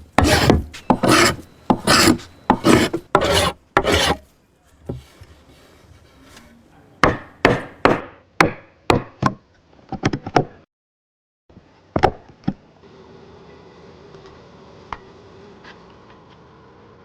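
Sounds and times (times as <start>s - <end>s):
tool striking into wood: 0.0s - 4.2s, 7.0s - 9.4s.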